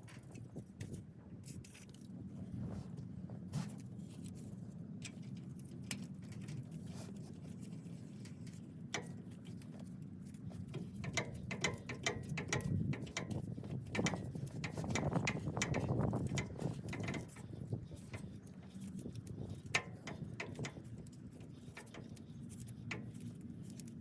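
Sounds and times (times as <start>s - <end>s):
low steady hum: 0.0s - 24.0s
ratchet wrench clicking: 10.7s - 18.3s, 18.9s - 23.9s.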